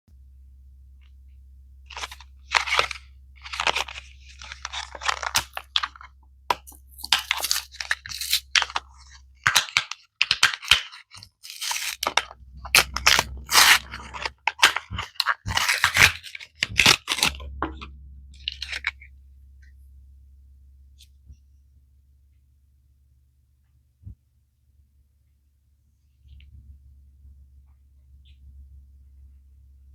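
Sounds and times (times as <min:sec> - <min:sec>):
packaging crinkling and tearing: 0:01.9 - 0:17.6, 0:18.4 - 0:19.0.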